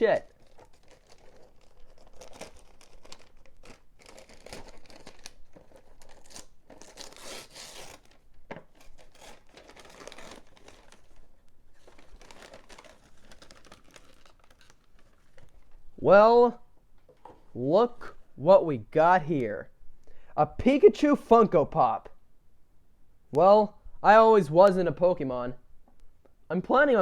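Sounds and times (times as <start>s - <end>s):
paper tearing: 0.0s - 15.5s
wrapping paper crinkling: 0.0s - 16.0s.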